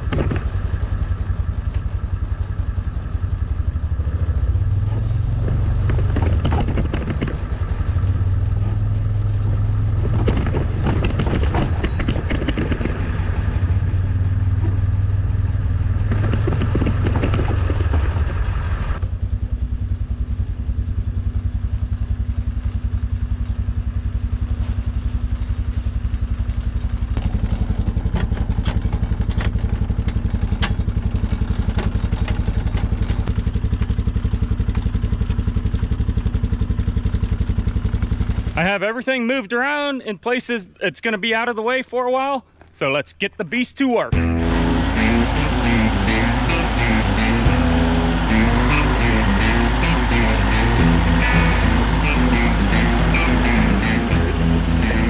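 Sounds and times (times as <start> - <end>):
loud clattering and knocks: 0.0 - 0.7, 4.9 - 7.8, 10.0 - 13.9, 16.0 - 18.6, 27.0 - 33.4
heavy machine engine running: 0.0 - 38.8, 44.1 - 55.0.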